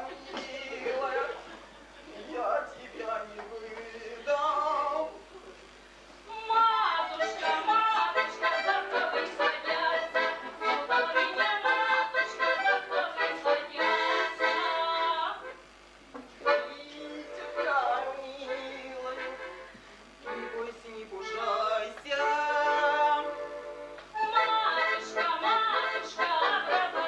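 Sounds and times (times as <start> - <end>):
accordion melody: 7.0 - 15.7, 16.4 - 27.0.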